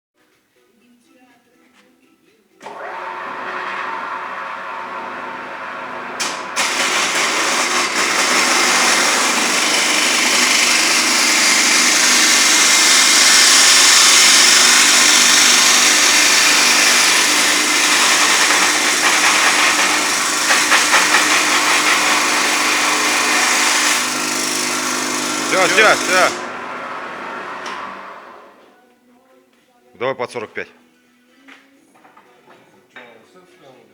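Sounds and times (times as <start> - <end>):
saw motor hum: 2.6 - 28.6
saw disc grinding hiss: 6.3 - 26.5.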